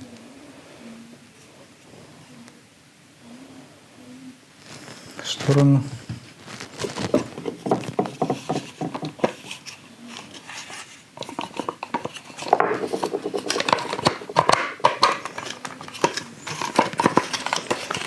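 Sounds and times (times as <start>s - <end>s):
plastic and metal parts clicking: 11.2s - 18.0s.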